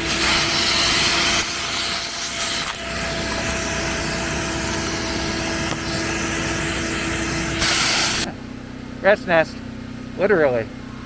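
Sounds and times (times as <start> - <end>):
motor humming: 0.0 - 8.7
rushing hiss: 3.4 - 8.3.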